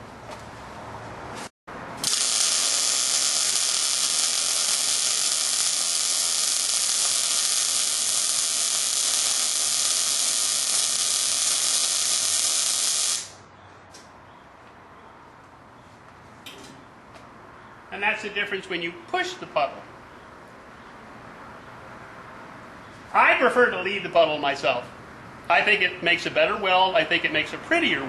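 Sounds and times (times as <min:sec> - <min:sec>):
welding arc hissing: 0:02.0 - 0:13.4.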